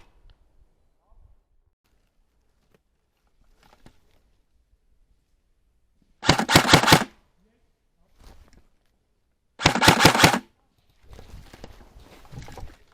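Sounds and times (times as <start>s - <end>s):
airsoft gun full-auto bursts: 6.2s - 7.2s, 9.6s - 10.5s.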